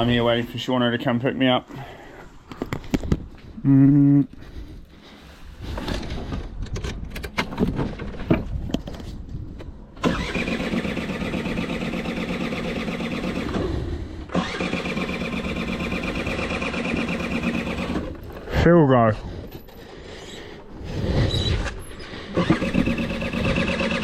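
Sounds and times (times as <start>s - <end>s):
van engine starting and running: 9.5s - 18.6s, 20.6s - 24.0s.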